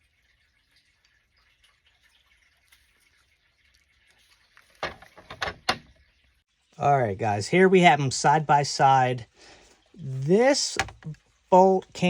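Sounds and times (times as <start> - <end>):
metal parts set down: 4.8 - 5.9.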